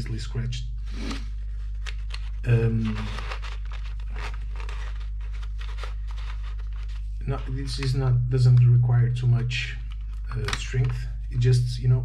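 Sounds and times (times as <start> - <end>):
low electrical hum: 0.0 - 12.0
small clicks and scrapes: 1.0 - 7.9
paper crinkling: 1.0 - 8.0.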